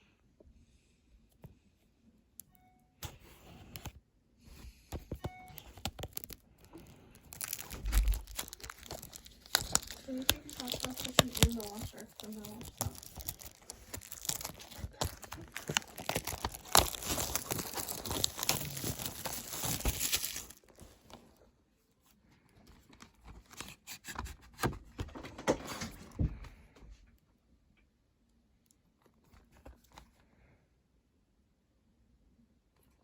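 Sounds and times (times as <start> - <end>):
plastic wrap tearing and crinkling: 5.5 - 21.1.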